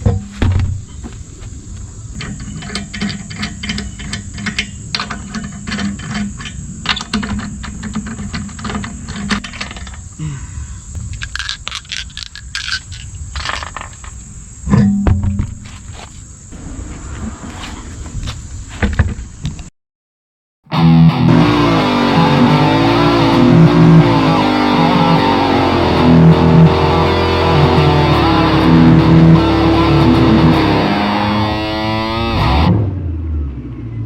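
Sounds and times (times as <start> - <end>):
insects chirring: 0.2 - 19.7.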